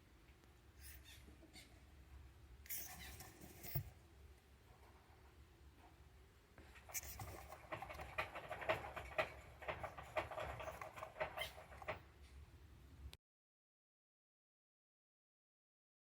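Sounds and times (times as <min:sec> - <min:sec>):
hamster scratching and rustling: 0:02.7 - 0:04.0, 0:06.6 - 0:12.0.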